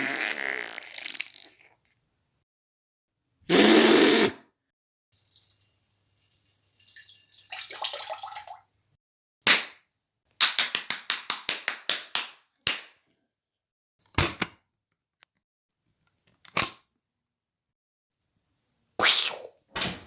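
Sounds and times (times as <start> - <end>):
sharp knocks and cracks: 10.4 - 13.0.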